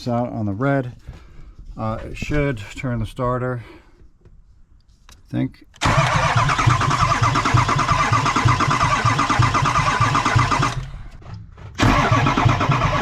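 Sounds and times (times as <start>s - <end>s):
diesel engine cranking on starter: 5.8s - 13.0s.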